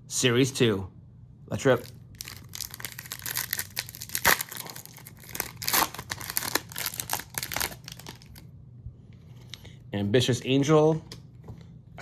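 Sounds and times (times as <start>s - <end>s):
foil pack tearing and crinkling: 1.7s - 8.4s.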